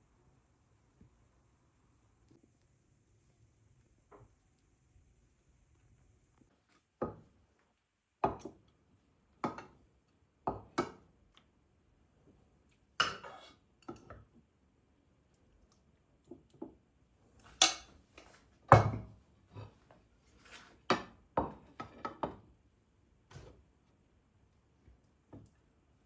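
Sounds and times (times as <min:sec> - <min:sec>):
dishes and utensils clinking: 0:13.0 - 0:14.1.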